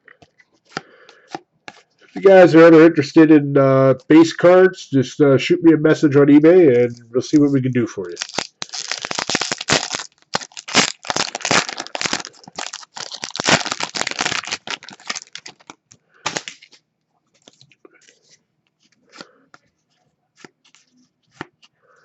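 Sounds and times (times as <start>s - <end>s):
cards rustling: 6.8s - 21.8s
foil wrapper crinkling: 8.1s - 16.8s.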